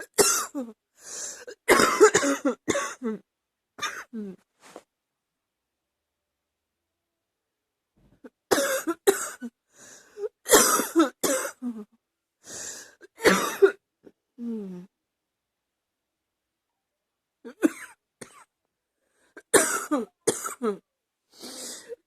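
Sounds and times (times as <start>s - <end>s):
woman coughing: 0.0s - 0.7s, 1.5s - 3.2s, 3.8s - 4.3s, 8.5s - 9.5s, 10.5s - 11.8s, 13.2s - 13.8s, 17.5s - 18.5s, 19.4s - 20.8s.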